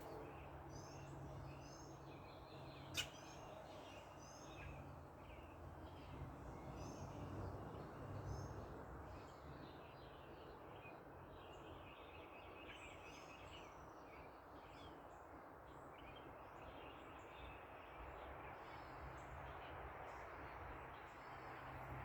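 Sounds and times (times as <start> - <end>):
distant traffic hiss: 0.0 - 9.8
small birds chirping: 0.0 - 15.0.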